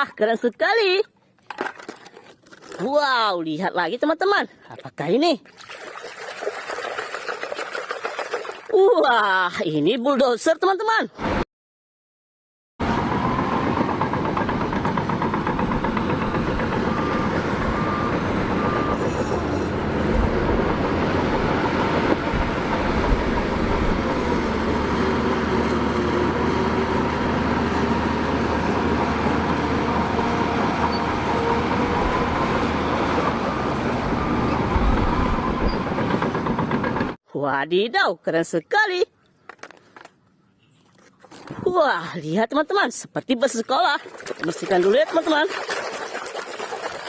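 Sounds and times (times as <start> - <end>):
heavy vehicle engine rumbling: 12.8 - 37.2.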